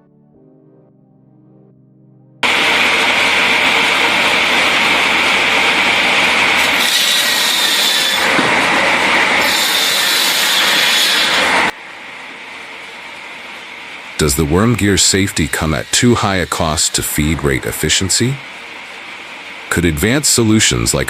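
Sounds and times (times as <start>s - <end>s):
wood-processing machine grinding: 2.4s - 11.7s
sharp hiss: 2.4s - 21.0s.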